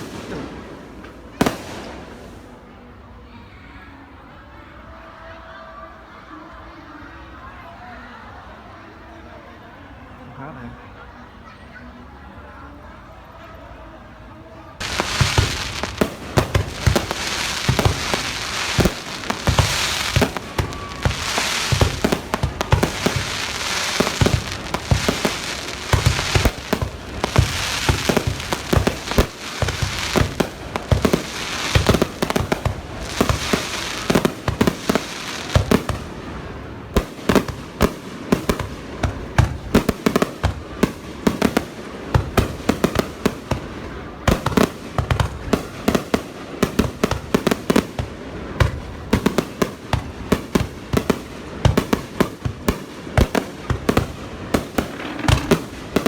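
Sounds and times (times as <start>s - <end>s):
fireworks bangs: 0.0s - 2.7s, 14.8s - 56.0s
fireworks crackling: 0.0s - 3.1s, 14.8s - 56.0s.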